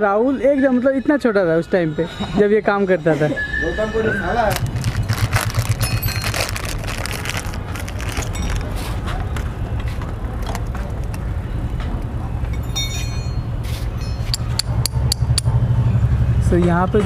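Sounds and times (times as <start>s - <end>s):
low rumble of vehicles running: 0.0s - 17.0s
light metallic clinks: 12.5s - 15.0s.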